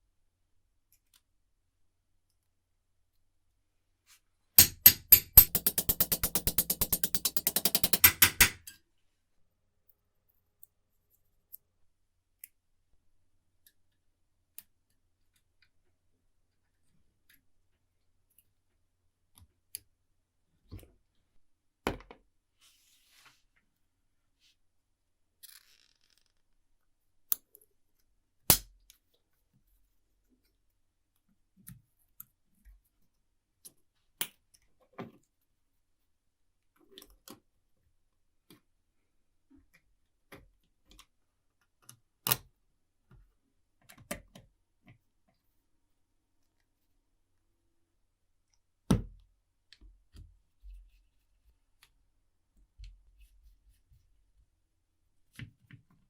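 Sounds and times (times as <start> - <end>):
metal parts and tools clicking: 4.6 - 8.8.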